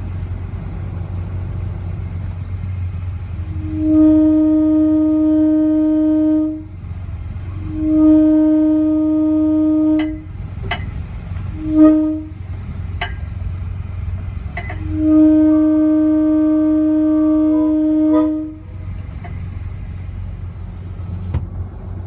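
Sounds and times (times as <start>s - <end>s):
steady low hum: 0.0s - 22.0s
train horn blasts: 2.5s - 19.5s.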